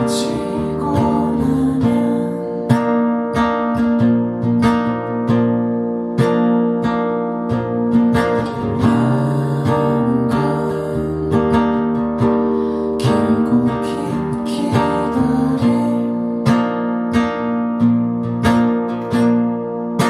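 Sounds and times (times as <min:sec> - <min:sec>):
acoustic guitar strumming chords: 0:00.0 - 0:20.0.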